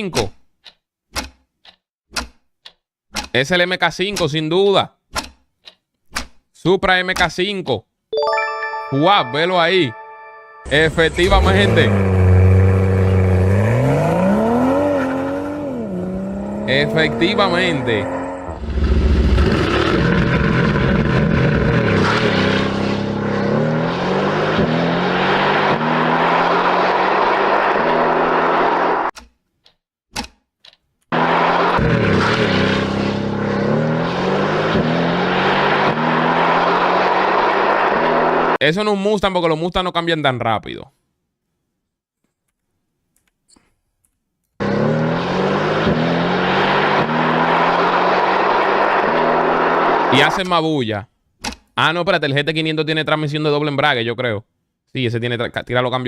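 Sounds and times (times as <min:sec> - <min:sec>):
sports car engine accelerating: 0:10.7 - 0:29.1, 0:31.1 - 0:38.6, 0:44.6 - 0:50.2.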